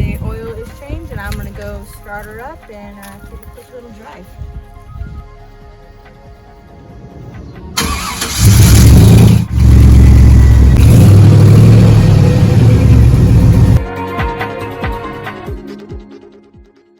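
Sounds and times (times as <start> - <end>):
truck engine starting and running: 7.7 - 13.8.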